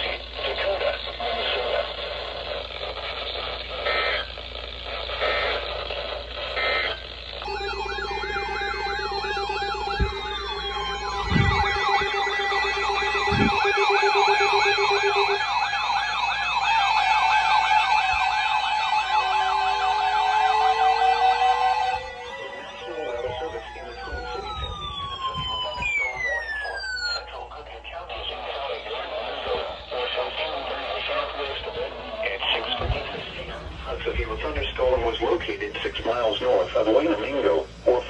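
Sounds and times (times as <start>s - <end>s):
muffled radio audio: 0.0s - 19.9s, 20.5s - 38.0s
electronic siren yelping wail: 6.9s - 27.6s.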